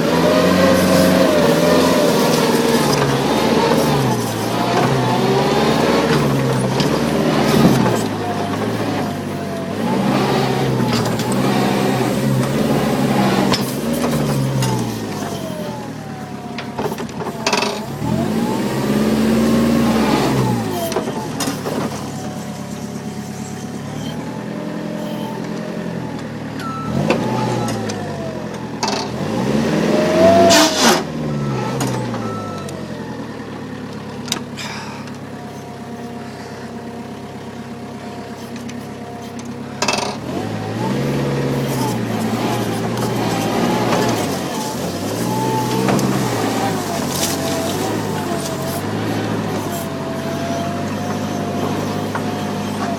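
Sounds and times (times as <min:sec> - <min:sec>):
dumper engine revving: 0:00.0 - 0:52.9
knocks and clunks: 0:16.4 - 0:18.2, 0:19.5 - 0:29.2, 0:38.5 - 0:52.9.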